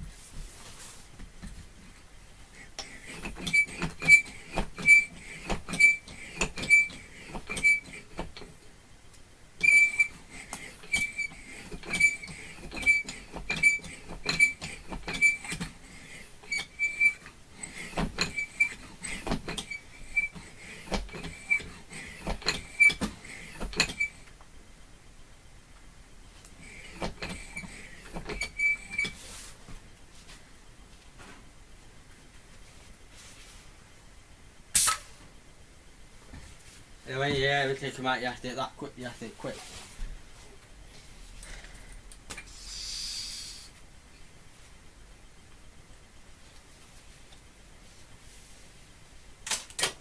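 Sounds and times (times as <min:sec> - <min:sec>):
bicycle pump squeak and click: 0:02.8 - 0:08.4, 0:09.6 - 0:24.2, 0:26.6 - 0:29.2.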